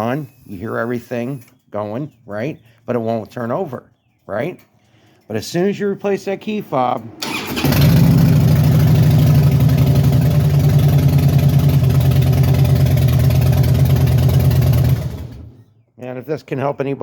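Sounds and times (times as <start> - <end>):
motorcycle engine starting and idling: 7.0 - 15.8.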